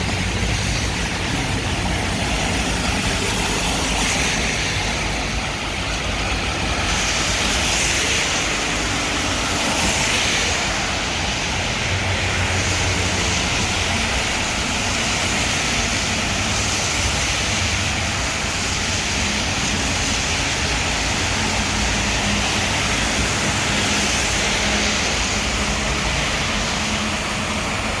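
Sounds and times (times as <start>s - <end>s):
heavy rain on wet road: 0.0s - 28.0s.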